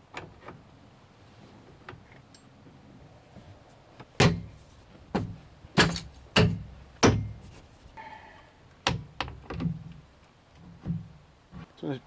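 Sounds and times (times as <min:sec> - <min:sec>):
sharp knocks with low ring: 0:05.2 - 0:07.4.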